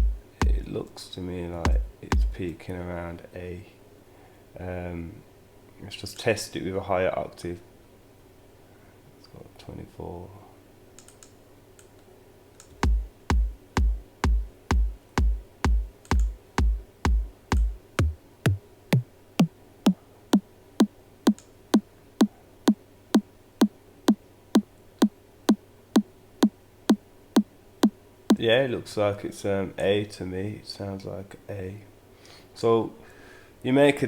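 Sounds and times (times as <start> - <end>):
electronic kick drum looping: 0.0 - 0.8, 1.7 - 2.4, 12.8 - 20.0.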